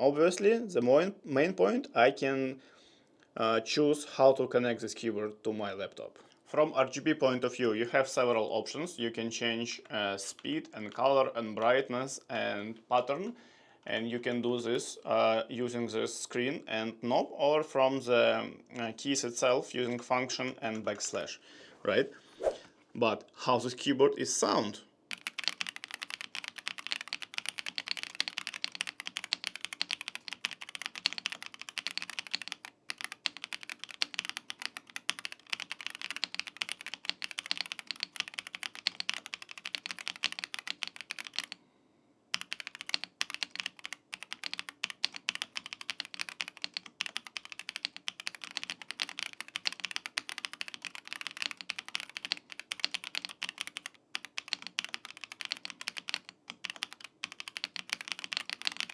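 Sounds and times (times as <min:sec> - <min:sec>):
mechanical keyboard typing: 0:25.1 - 0:41.6, 0:42.3 - 0:58.9.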